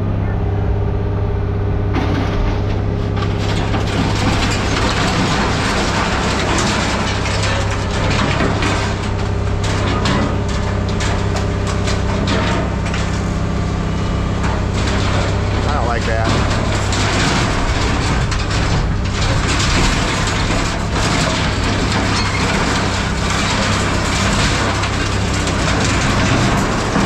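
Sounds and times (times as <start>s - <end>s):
machine engine droning: 0.0s - 27.0s
scrap metal crunching: 1.6s - 27.0s.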